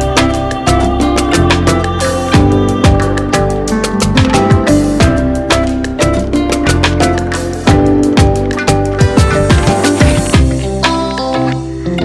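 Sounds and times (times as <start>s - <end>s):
steady drum beat: 0.0s - 11.2s
bass: 0.0s - 12.0s
plucked guitar: 0.0s - 12.0s.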